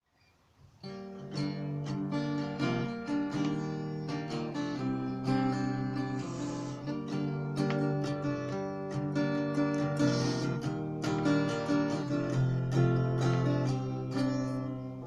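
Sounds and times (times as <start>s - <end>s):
acoustic guitar strumming chords: 0.8s - 15.0s.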